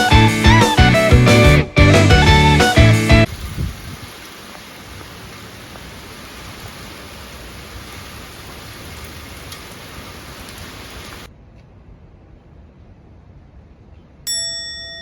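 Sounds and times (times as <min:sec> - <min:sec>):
heavy rain pouring: 0:02.4 - 0:11.3
raindrops ticking: 0:03.2 - 0:11.3.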